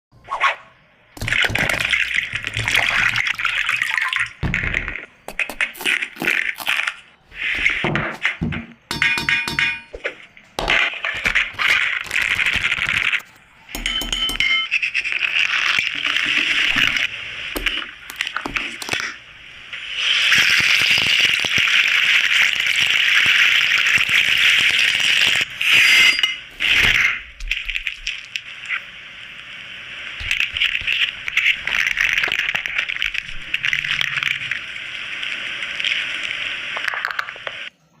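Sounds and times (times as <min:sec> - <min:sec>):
vegetables sizzling in hot oil: 0:15.3 - 0:26.9, 0:27.8 - 0:37.7.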